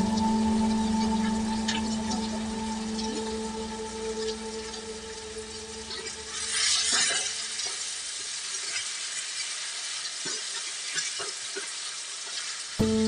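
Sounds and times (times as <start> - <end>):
steady hum: 0.0 - 7.5
chicken sizzling in a pan: 0.8 - 13.0.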